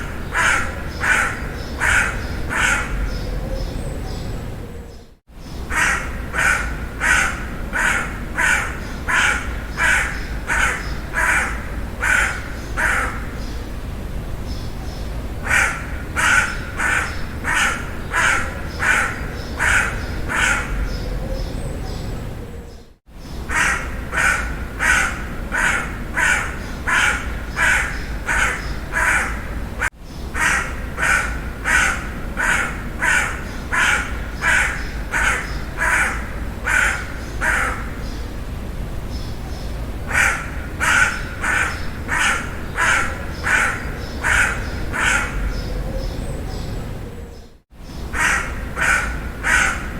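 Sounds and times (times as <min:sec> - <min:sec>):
crow cawing: 0:00.0 - 0:03.2, 0:05.7 - 0:13.4, 0:15.4 - 0:20.9, 0:23.5 - 0:38.1, 0:40.1 - 0:45.6, 0:48.1 - 0:49.9.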